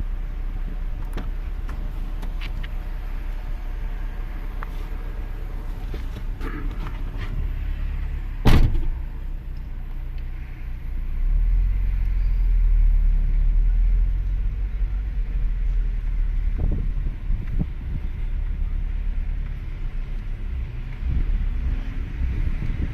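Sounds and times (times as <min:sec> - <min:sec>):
car rumble: 0:00.0 - 0:22.9
sharp knock: 0:08.4 - 0:08.9.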